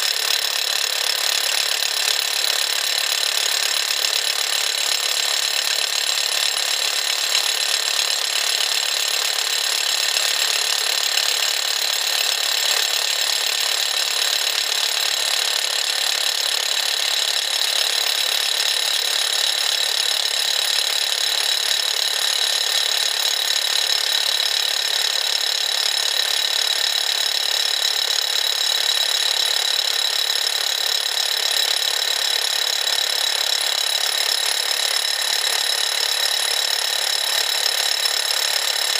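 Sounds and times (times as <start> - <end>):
rotary hammer drilling into rock: 0.0 - 38.9.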